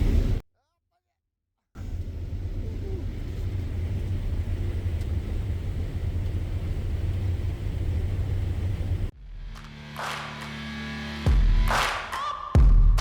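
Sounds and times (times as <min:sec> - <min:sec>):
heavy farm machinery engine rumble: 0:01.8 - 0:09.1.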